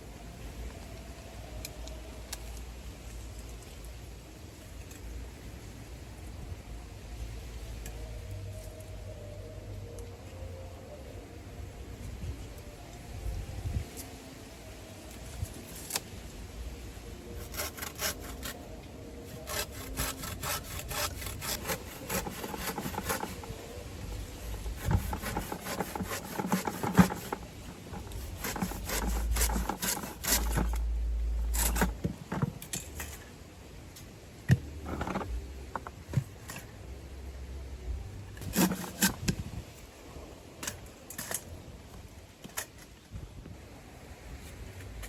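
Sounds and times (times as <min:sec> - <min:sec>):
hand tool scraping: 0:17.4 - 0:33.2, 0:34.9 - 0:35.4, 0:38.4 - 0:39.4.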